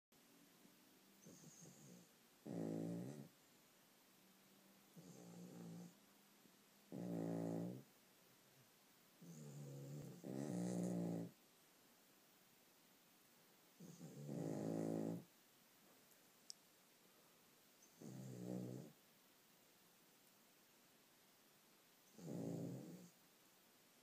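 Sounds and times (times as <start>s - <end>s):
dogs snoring: 1.2s - 3.4s, 4.9s - 6.0s, 6.9s - 7.9s, 9.2s - 11.4s, 13.8s - 15.3s, 17.8s - 19.0s, 22.0s - 23.2s.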